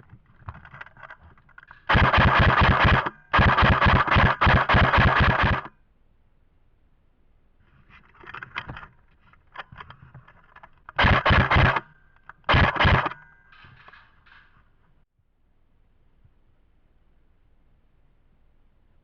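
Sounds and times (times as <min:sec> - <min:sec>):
airsoft gun bursts: 0:01.8 - 0:05.7, 0:11.0 - 0:13.2.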